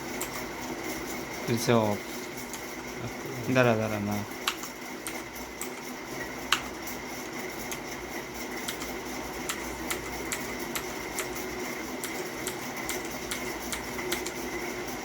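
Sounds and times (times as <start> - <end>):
mechanical keyboard keys clicking: 12.0 - 14.4.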